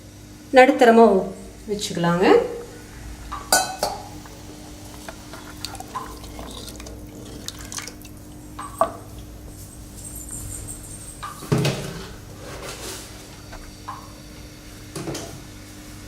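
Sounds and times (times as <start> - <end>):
steady hum: 0.0 - 16.0
utensil clatter: 3.6 - 13.1
liquid dripping and sloshing: 4.1 - 11.8.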